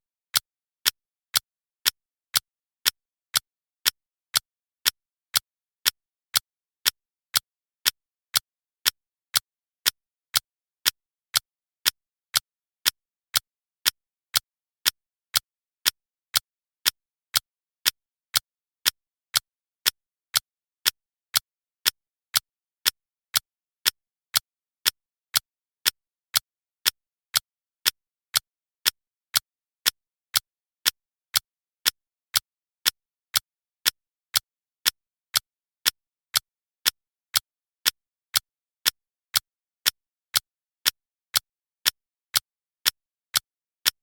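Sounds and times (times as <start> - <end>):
clock ticking: 32.8 - 44.0.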